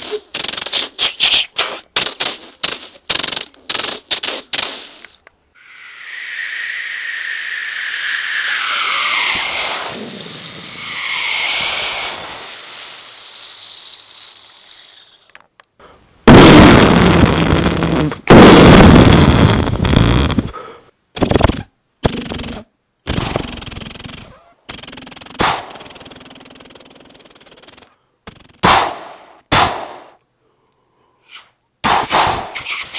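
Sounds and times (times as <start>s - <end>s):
mouth-made gunfire bursts: 1.6s - 5.1s
mouth-made hissing whooshes: 4.8s - 15.3s
mouth-made explosion blasts: 16.3s - 20.4s.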